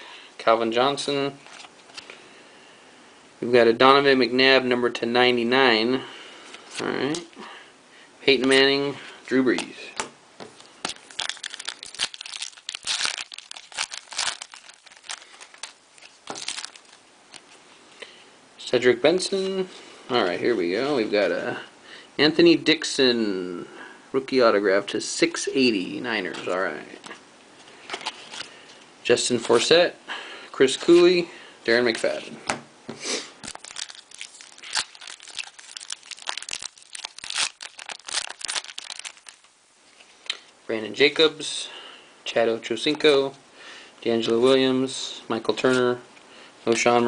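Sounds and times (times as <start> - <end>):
cards being handled: 9.5 - 17.6, 33.4 - 39.5
wrapper crinkling: 10.6 - 17.6, 33.4 - 39.5.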